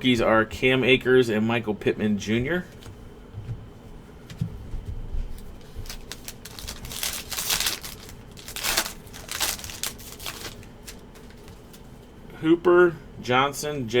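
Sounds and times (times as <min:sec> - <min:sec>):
foil wrapper tearing and crinkling: 0:05.6 - 0:11.6.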